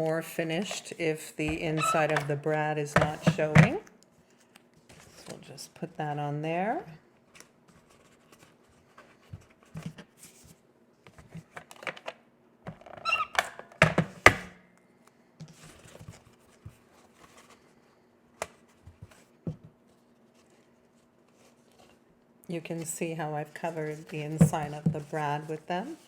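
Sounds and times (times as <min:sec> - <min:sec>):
paper rustling and crinkling: 0:15.5 - 0:22.0, 0:22.6 - 0:26.0.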